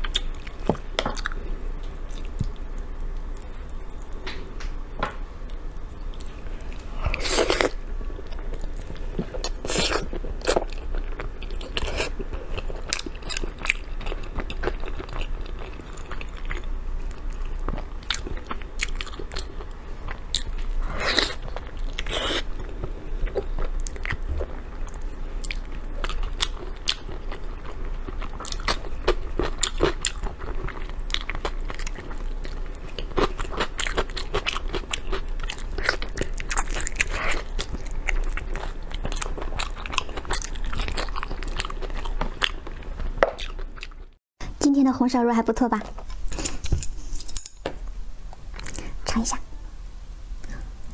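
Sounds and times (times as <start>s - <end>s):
close-miked chewing: 0.0s - 4.2s, 5.4s - 44.2s.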